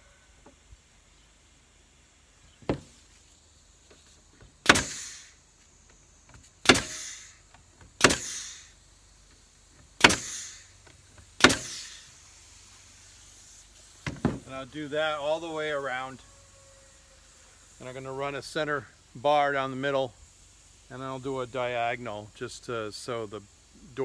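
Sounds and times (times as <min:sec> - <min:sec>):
nail gun firing: 0:04.6 - 0:05.3, 0:06.6 - 0:07.4, 0:08.0 - 0:08.7, 0:10.0 - 0:10.7, 0:11.4 - 0:12.0.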